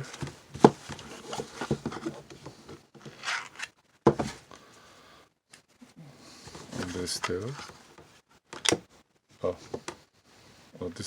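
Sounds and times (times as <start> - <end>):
plastic clicks and scraping: 1.0 - 3.8.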